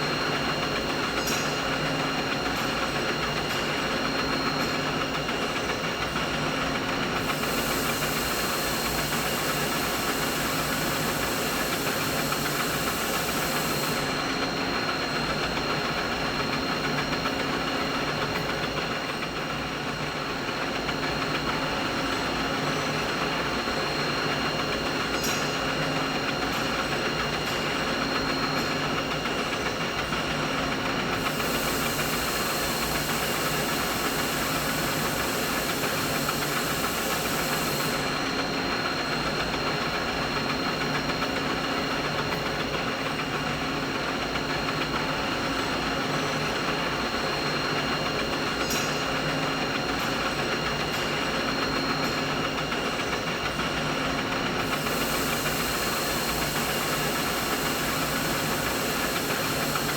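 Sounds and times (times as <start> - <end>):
thin high hiss: 31.2 - 38.1, 54.7 - 59.9
machinery drone: 54.6 - 59.9.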